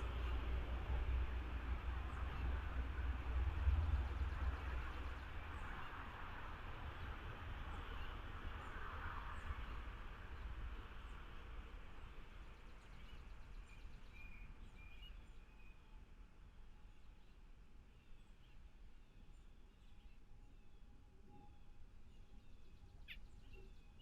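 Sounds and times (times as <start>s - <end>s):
bird chirps: 18.0s - 24.0s.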